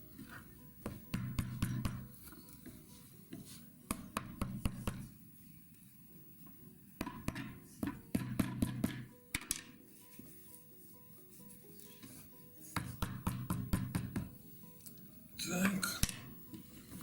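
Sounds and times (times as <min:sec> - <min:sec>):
hammer tapping nails: 0:00.9 - 0:02.1, 0:07.0 - 0:09.7.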